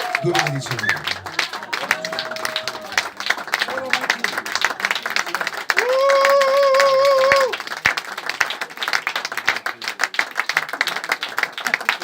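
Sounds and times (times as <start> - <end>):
person cheering: 0.0 - 4.1, 5.8 - 7.6
audience applauding: 0.0 - 12.0.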